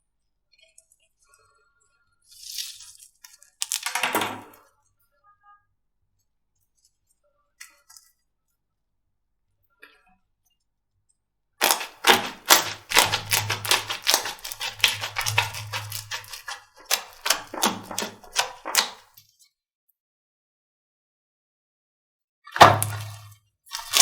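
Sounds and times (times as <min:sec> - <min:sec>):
slime crackling pops: 0:11.6 - 0:19.0, 0:22.6 - 0:24.0.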